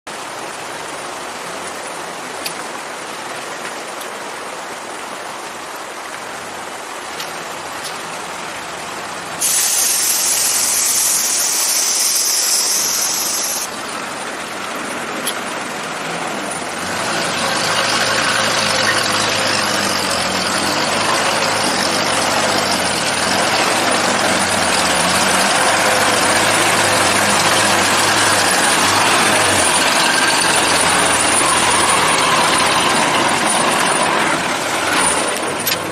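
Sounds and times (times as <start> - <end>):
truck engine droning: 9.0 - 35.9
loud hiss: 9.4 - 14.2, 17.0 - 35.0.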